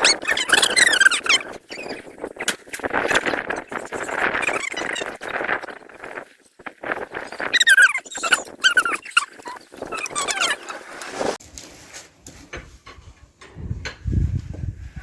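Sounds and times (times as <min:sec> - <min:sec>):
dog whining and yelping: 0:00.0 - 0:02.1, 0:07.4 - 0:11.4
soft scuffling: 0:10.6 - 0:12.8.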